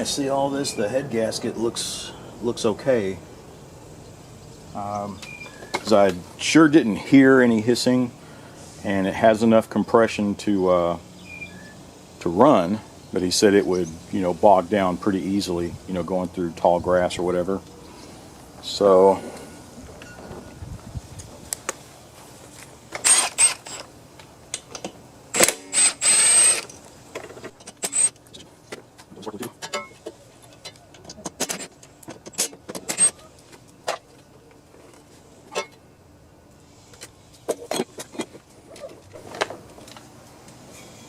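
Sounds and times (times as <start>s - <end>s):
tools and metal parts clinking: 26.4s - 28.5s, 29.4s - 34.1s, 34.8s - 35.8s.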